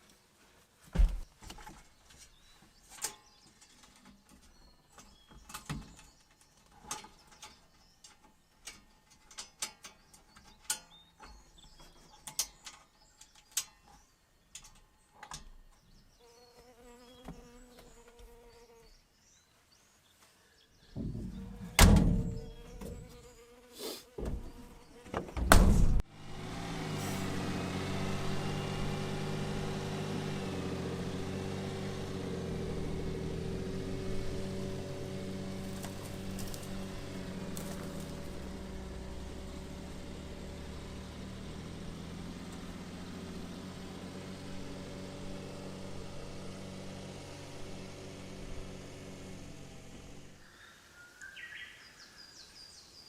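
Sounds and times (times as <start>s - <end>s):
heavy thumps: 20.9s - 23.2s, 24.2s - 26.1s
small engine starting and idling: 26.0s - 50.4s.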